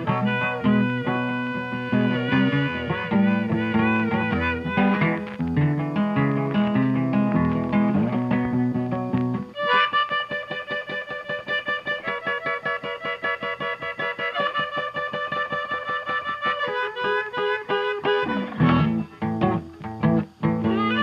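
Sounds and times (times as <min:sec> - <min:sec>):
instrumental background music: 0:00.0 - 0:21.0.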